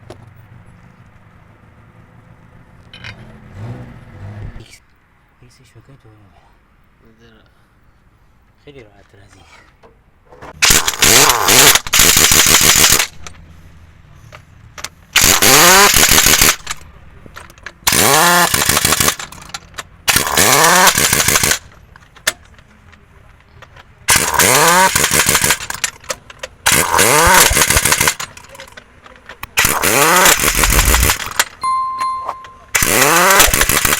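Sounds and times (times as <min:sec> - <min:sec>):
pneumatic impact wrench bursts: 0:10.6 - 0:13.5, 0:14.3 - 0:16.8, 0:17.8 - 0:22.4, 0:24.0 - 0:28.8, 0:29.4 - 0:31.6, 0:32.7 - 0:33.9.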